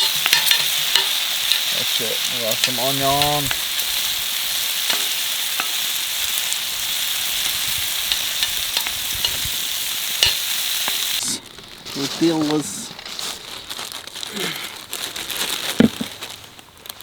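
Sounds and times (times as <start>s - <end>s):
utensil clicking against pan: 0.0s - 1.8s, 2.5s - 3.8s, 8.0s - 9.5s
meat and onions sizzling in skillet: 0.0s - 12.9s.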